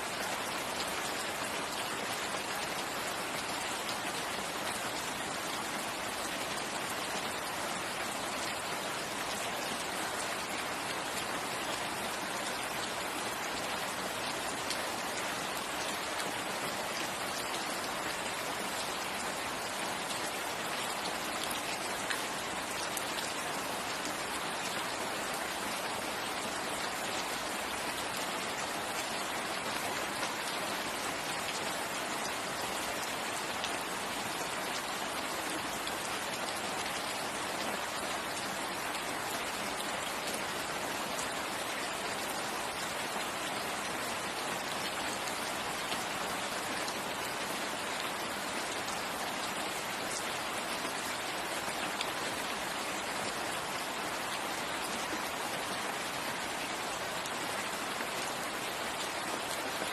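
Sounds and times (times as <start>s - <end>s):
steady rain hiss: 0.0s - 59.9s.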